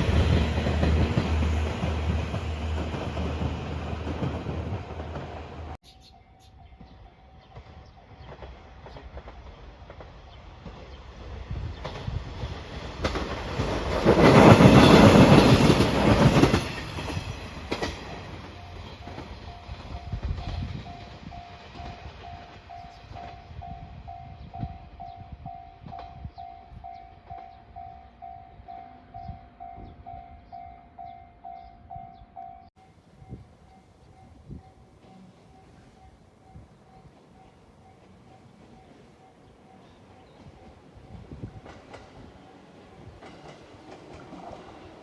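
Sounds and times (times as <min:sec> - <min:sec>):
train wheels clattering: 0:11.7 - 0:23.4, 0:40.3 - 0:45.0
crossing warning bell ringing: 0:12.4 - 0:43.6.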